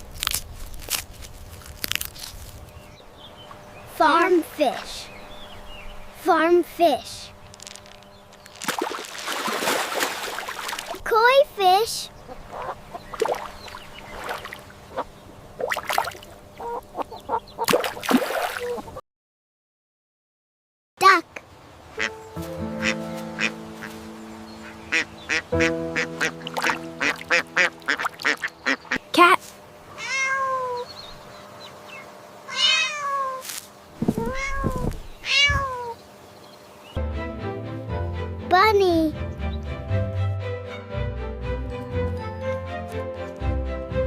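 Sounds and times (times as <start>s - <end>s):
waterfowl calling: 12.2s - 15.2s, 16.5s - 17.7s, 22.0s - 29.0s
cat meowing: 30.0s - 30.9s, 32.5s - 33.4s, 34.1s - 36.0s.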